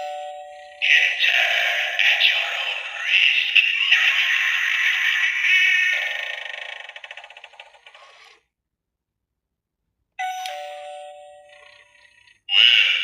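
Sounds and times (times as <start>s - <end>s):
two-note doorbell chime: 0.0s - 0.8s, 10.2s - 11.8s.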